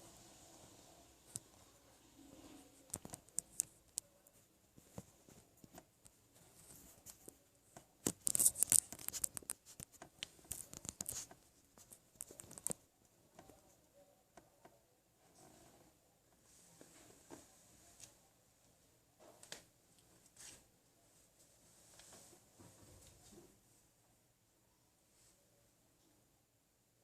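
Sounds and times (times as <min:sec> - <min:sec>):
sharp clicks and crackles: 0:02.8 - 0:13.6.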